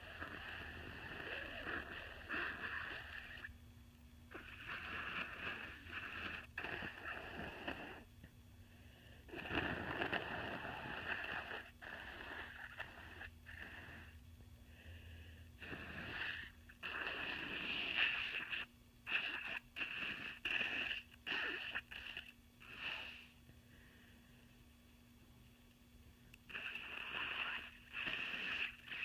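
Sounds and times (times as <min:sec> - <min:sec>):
person blowing congested nose: 0:00.0 - 0:03.5, 0:04.3 - 0:08.1, 0:09.2 - 0:14.2, 0:15.5 - 0:23.4, 0:26.5 - 0:29.0.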